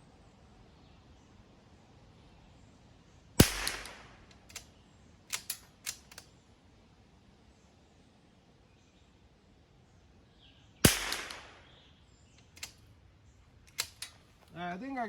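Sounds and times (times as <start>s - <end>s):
rifle shot with echo: 3.4s - 4.7s, 10.8s - 12.0s
sharp clicks: 3.4s - 4.7s, 5.3s - 6.3s, 10.9s - 11.7s, 12.4s - 12.9s, 13.6s - 14.6s.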